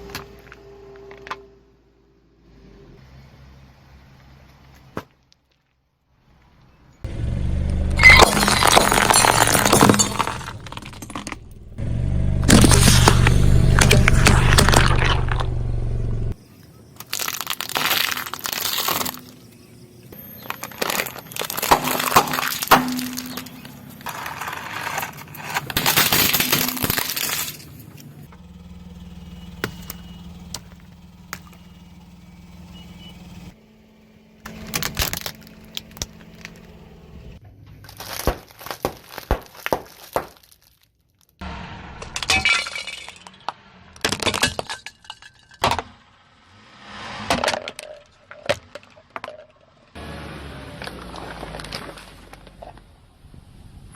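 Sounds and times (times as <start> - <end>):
objects crunching under car tyres: 7.9 - 33.6, 34.4 - 53.0
sharp cracks and snaps: 17.0 - 19.4.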